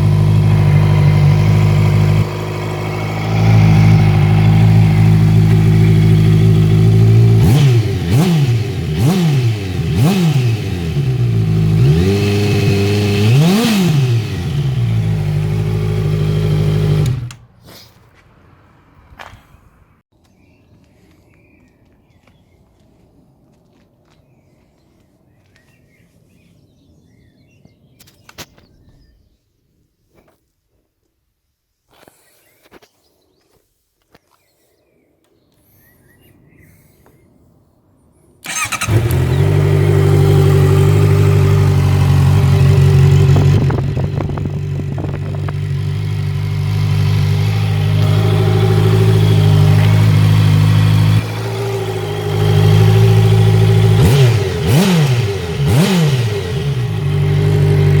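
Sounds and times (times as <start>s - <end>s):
motorcycle engine starting and idling: 0.0s - 17.6s, 38.4s - 58.0s
motorcycle throttle blips: 0.0s - 17.6s, 38.4s - 58.0s.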